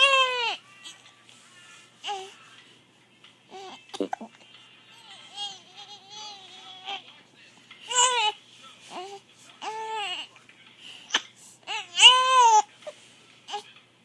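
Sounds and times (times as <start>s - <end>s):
baby crying: 0.0s - 1.0s, 5.0s - 7.0s, 7.9s - 10.3s, 11.1s - 12.7s.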